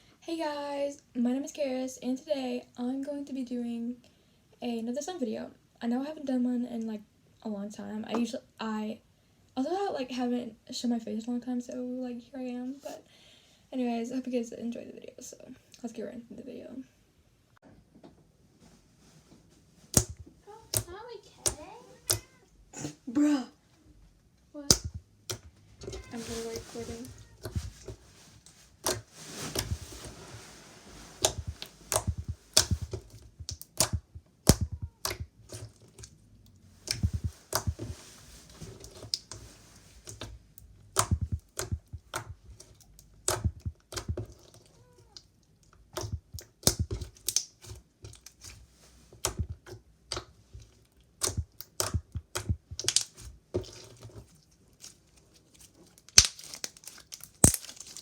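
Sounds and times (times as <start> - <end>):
slime clicking and popping: 19.9 - 22.3, 24.7 - 25.5, 28.8 - 29.9, 31.2 - 36.1, 36.8 - 38.0, 40.9 - 42.4, 43.2 - 44.3, 46.0 - 47.7, 49.2 - 50.3, 51.2 - 53.2, 56.1 - 58.0.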